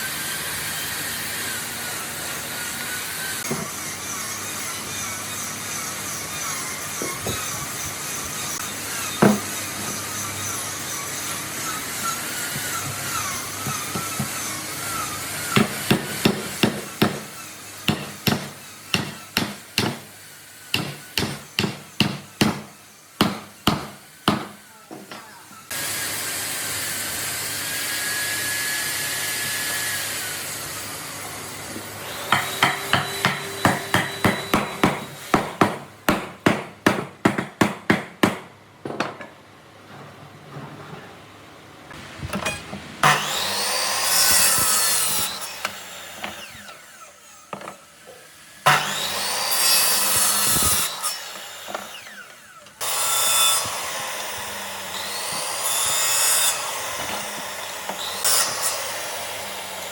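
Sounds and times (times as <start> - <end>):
power tool whining: 0.0 - 19.4
hammer blows: 32.1 - 38.5.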